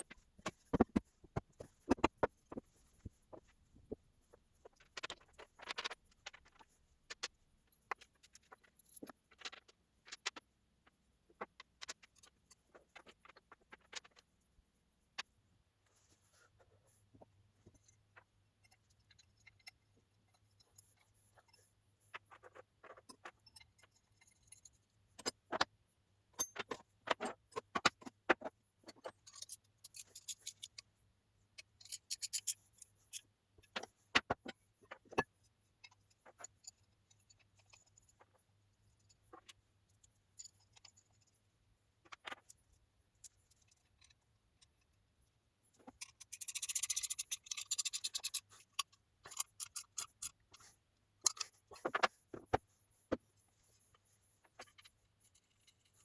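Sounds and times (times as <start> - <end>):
clicks and knocks of metal tools: 26.3 - 30.9, 31.6 - 38.3, 45.8 - 53.2.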